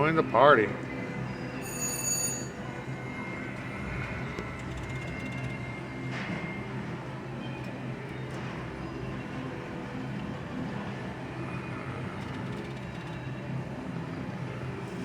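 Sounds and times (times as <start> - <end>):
slot machines electronic hum: 0.0 - 15.0
short high chime: 1.6 - 2.6.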